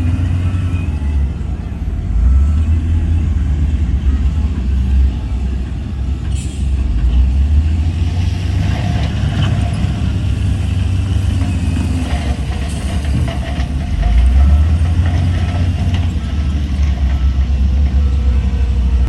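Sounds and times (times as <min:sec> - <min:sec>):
heavy diesel engine rumbling: 0:00.0 - 0:19.0
rattling: 0:08.4 - 0:17.4.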